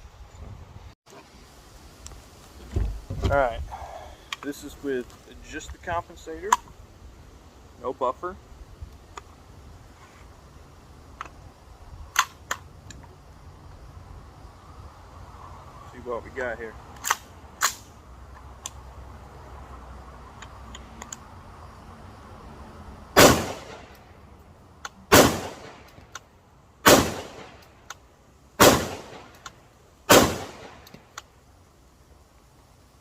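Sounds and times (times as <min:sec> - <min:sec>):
rifle shots ringing: 0:23.2 - 0:23.9, 0:25.1 - 0:25.8, 0:26.8 - 0:27.6, 0:28.6 - 0:29.3, 0:30.1 - 0:30.8.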